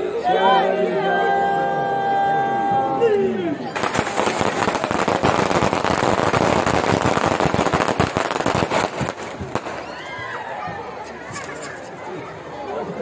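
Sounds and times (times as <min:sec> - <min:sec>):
fireworks cracking and banging: 0:03.8 - 0:10.4.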